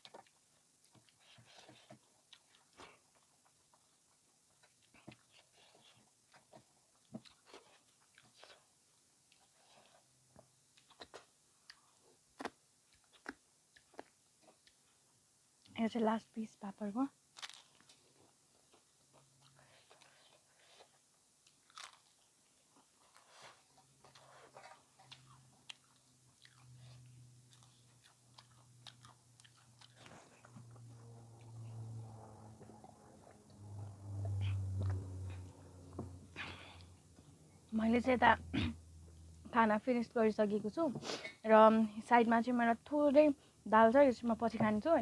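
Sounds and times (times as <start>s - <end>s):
chewing and mouth sounds: 0.0s - 10.1s, 10.7s - 15.7s, 17.4s - 37.5s
small crunches: 17.4s - 18.0s.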